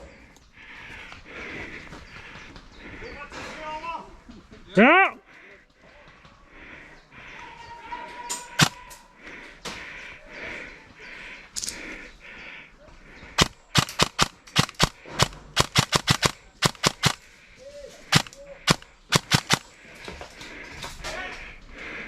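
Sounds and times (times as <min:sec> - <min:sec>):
airsoft guns firing: 0:08.5 - 0:08.8, 0:13.4 - 0:17.3, 0:18.1 - 0:19.7.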